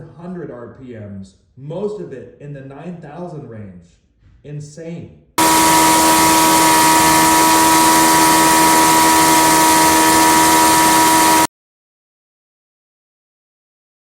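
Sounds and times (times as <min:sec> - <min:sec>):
race engine high-pitched drone: 0:05.4 - 0:11.5.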